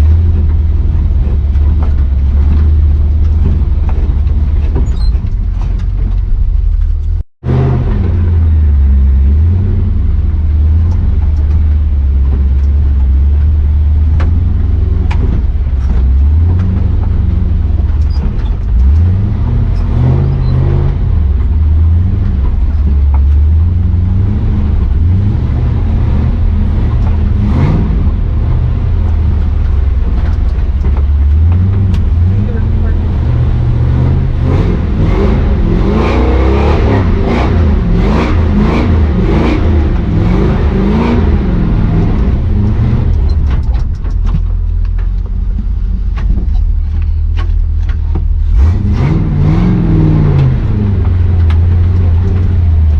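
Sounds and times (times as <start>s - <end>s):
truck engine revving under load: 7.0s - 44.0s, 46.2s - 52.9s.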